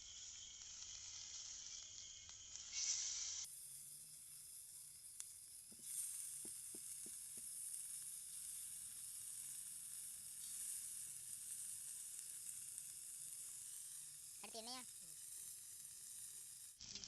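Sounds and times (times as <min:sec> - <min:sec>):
fish sizzling in hot oil: 0:00.0 - 0:17.0.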